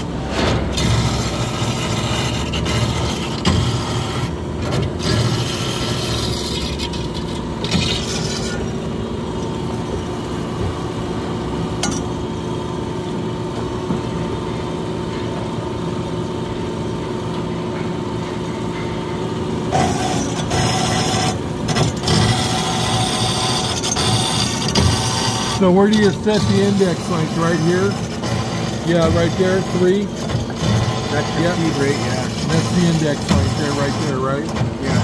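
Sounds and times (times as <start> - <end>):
bandsaw cutting metal: 0.0 - 8.9, 19.7 - 35.0.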